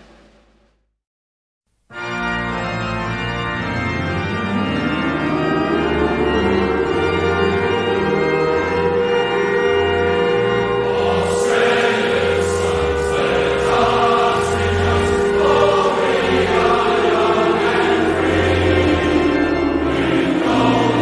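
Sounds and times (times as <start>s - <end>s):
organ chords: 1.9s - 21.0s
choir singing: 4.6s - 9.6s, 10.3s - 21.0s.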